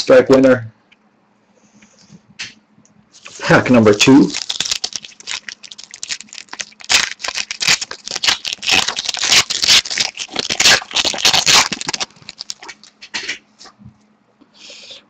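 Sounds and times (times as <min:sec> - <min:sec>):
wrapper crinkling and tearing: 0:03.2 - 0:13.0.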